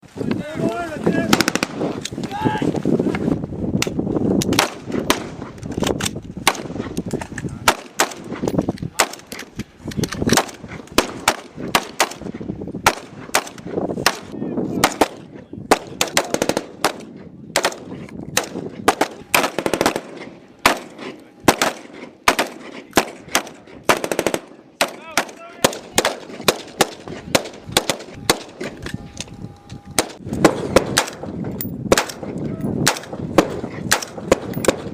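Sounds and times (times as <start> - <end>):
rifle shots: 1.3 - 1.8, 4.5 - 7.0, 7.6 - 9.5, 10.2 - 28.8, 30.0 - 34.9
automatic gunfire bursts: 12.9 - 17.0, 18.4 - 28.6.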